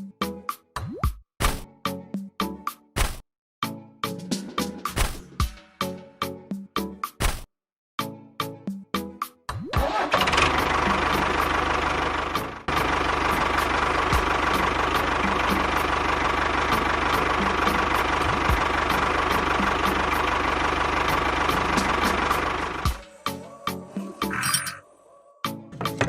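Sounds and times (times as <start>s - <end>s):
engine running with fast knock: 10.2s - 23.0s.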